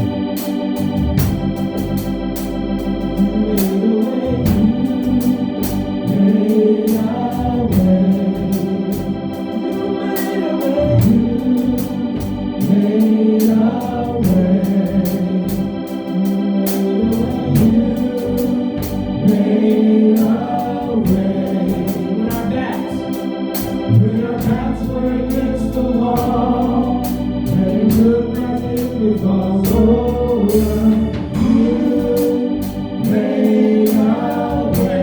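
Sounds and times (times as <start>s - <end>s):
gospel band playing: 0.0s - 35.0s
moving bass line: 0.0s - 35.0s
sustained keyboard chords: 0.0s - 35.0s
person singing: 3.0s - 23.2s, 23.9s - 35.0s.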